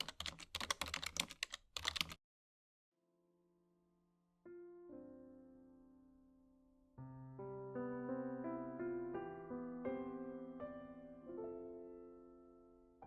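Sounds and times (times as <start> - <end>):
keyboard typing clicks: 0.0 - 2.2
soft piano music: 4.3 - 13.0.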